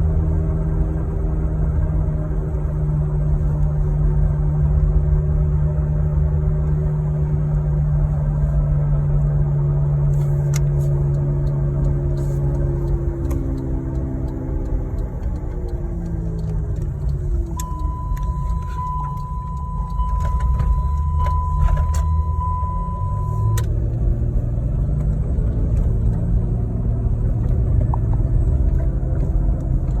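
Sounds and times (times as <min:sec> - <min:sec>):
low car hum while driving: 0:00.0 - 0:30.0
clicks: 0:10.2 - 0:23.8
steady high beep: 0:17.5 - 0:23.7.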